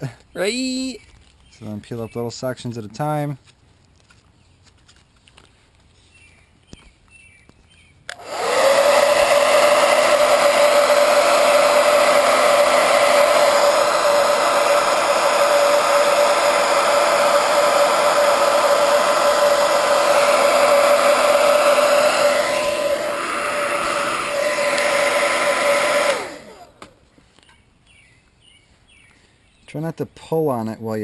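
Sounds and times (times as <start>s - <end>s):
blow dryer running: 8.1s - 27.1s.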